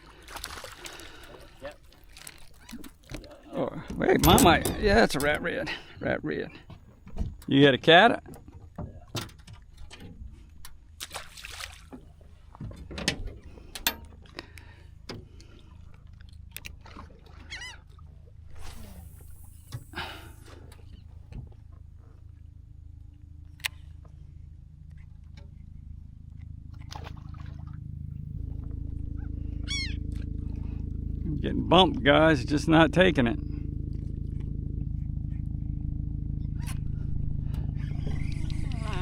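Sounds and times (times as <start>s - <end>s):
water sloshing: 0.0s - 7.4s, 8.2s - 32.2s
low steady hum: 0.0s - 39.0s
low rumble: 3.0s - 7.5s, 18.0s - 39.0s.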